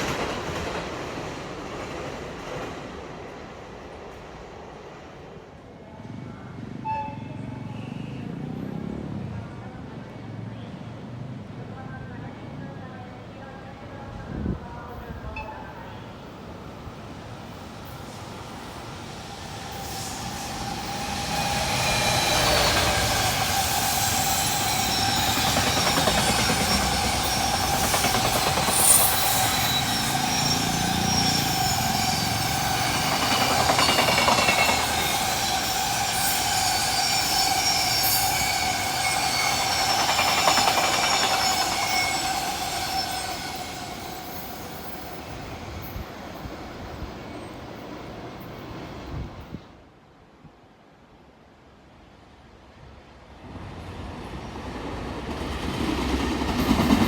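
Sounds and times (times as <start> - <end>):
train wheels clacking over rail joints: 0.0 - 3.0, 22.3 - 36.3, 39.6 - 43.2
high-pitched locomotive whine: 11.8 - 49.6.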